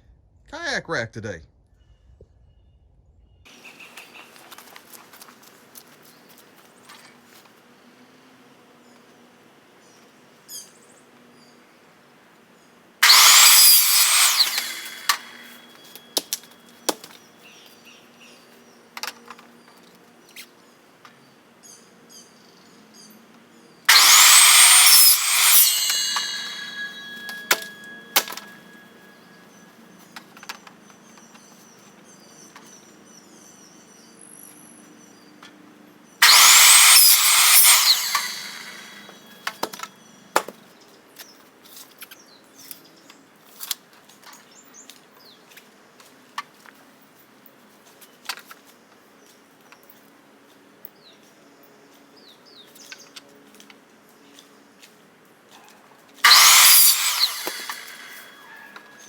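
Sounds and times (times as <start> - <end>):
power saw cutting pipe: 13.0 - 16.4, 23.9 - 29.6, 36.2 - 39.7, 56.2 - 59.0.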